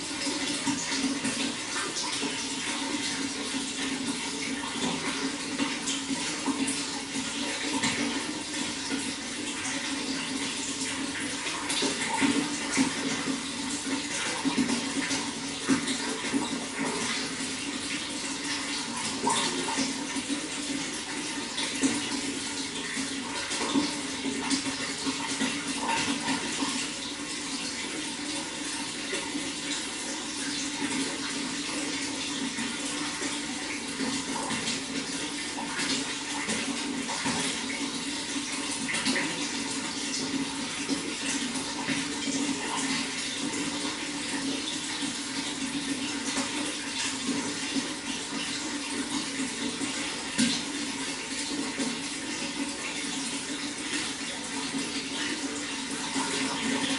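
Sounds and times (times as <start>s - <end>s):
running water flowing: 0.0s - 56.9s
water splashes: 0.0s - 56.9s.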